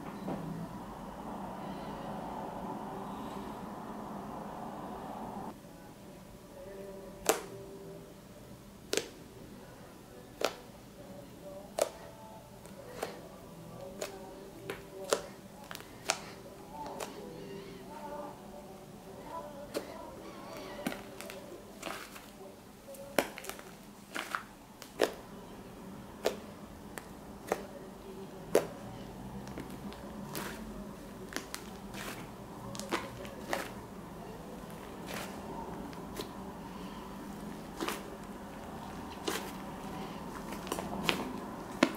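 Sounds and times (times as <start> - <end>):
slime being pressed by hand: 37.6 - 38.1.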